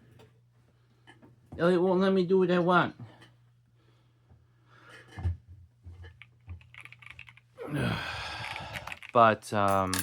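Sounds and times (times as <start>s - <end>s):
breathy sighing voice: 7.6s - 9.0s.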